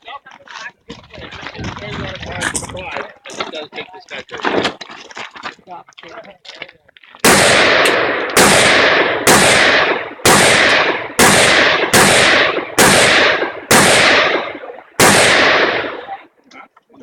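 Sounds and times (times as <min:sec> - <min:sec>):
rifle shots echoing: 0:07.2 - 0:16.2.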